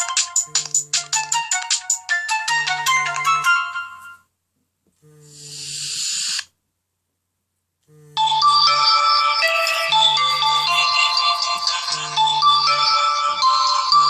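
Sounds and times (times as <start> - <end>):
electronic ringtone melody: 0.0 - 4.2, 8.2 - 14.0.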